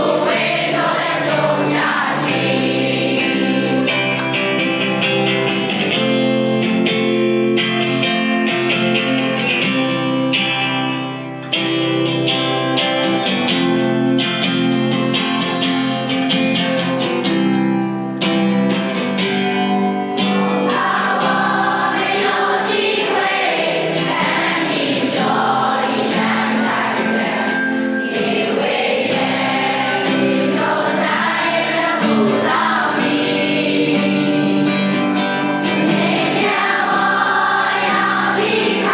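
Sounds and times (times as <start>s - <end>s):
group of voices singing: 0.0s - 4.9s, 20.7s - 38.9s
plucked guitar: 0.0s - 38.9s.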